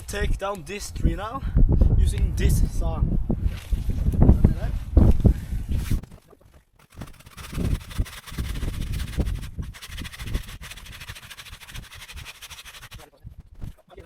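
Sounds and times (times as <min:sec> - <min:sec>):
hand saw cutting wood: 0:06.8 - 0:13.1.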